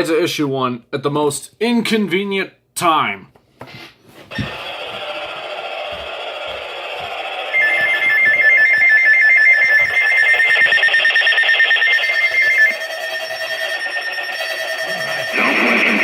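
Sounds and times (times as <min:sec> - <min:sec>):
warbling two-tone alarm: 0:04.3 - 0:16.0.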